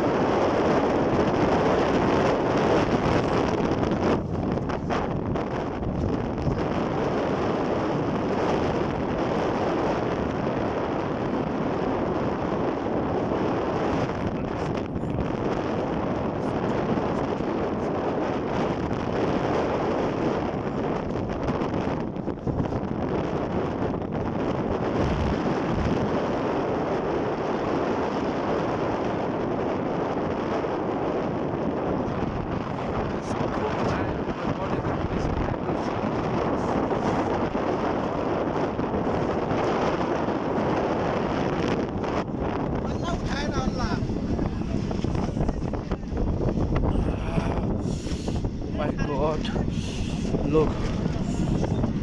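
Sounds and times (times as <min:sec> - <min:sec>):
wind on microphone: 0:00.0 - 0:52.0
moving train running noise: 0:42.8 - 0:46.8, 0:47.5 - 0:52.0.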